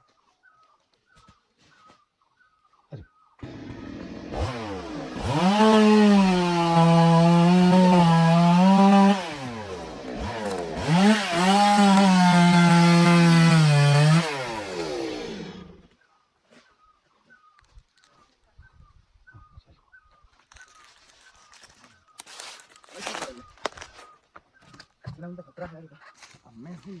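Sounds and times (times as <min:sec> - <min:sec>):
chainsaw cutting wood: 0:03.4 - 0:15.9.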